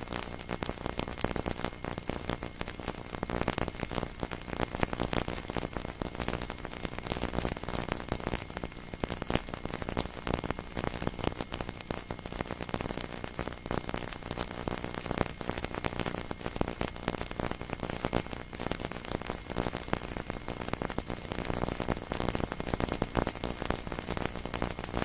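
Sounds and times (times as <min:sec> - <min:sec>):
crackling static: 0:00.0 - 0:25.0.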